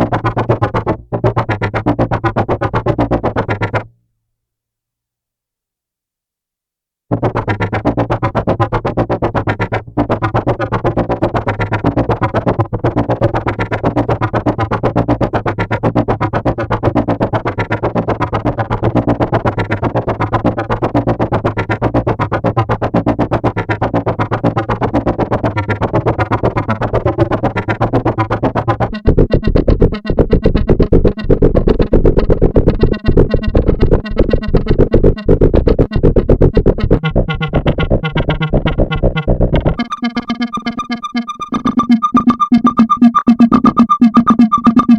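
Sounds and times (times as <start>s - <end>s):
choppy pulsing synthesizer: 0.0s - 3.8s, 7.1s - 44.9s
low synthesizer drone: 28.8s - 44.9s
buzzing synthesizer texture: 31.8s - 44.9s.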